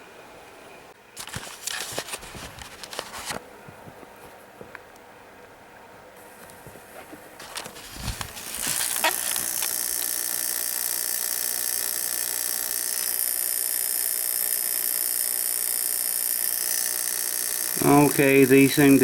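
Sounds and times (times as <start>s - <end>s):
sparks buzzing and hissing: 7.7s - 19.0s.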